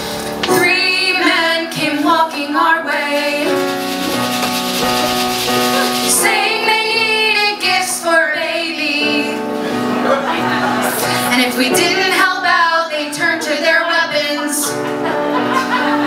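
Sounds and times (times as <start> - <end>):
instrumental accompaniment: 0.0 - 16.0
women singing: 0.5 - 3.8, 5.8 - 9.5, 10.8 - 14.8.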